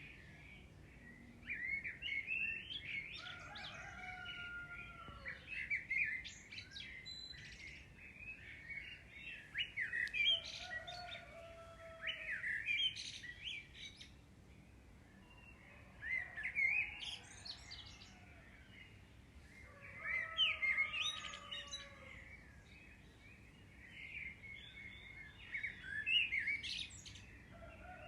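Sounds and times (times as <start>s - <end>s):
birds chirping and twittering: 0.0s - 28.0s.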